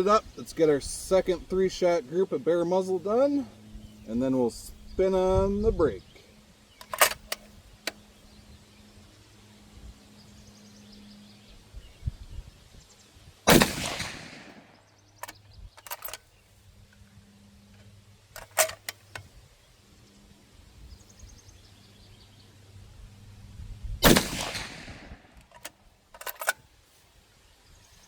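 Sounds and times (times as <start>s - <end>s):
sharp clicks: 6.8s - 8.0s, 15.2s - 16.2s, 17.8s - 19.3s, 24.0s - 26.6s
rifle shot: 13.5s - 14.8s, 24.0s - 25.4s.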